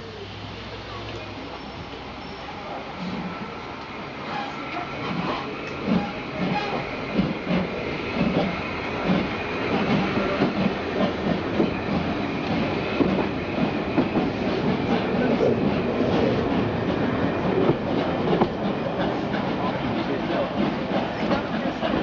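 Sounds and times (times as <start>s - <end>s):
steam locomotive exhaust beats: 0.0s - 22.0s
train wheels clicking on rails: 1.0s - 22.0s.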